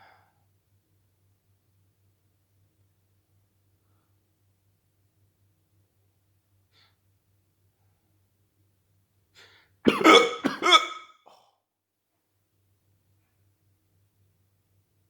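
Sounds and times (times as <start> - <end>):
person hiccuping: 9.9 - 11.1.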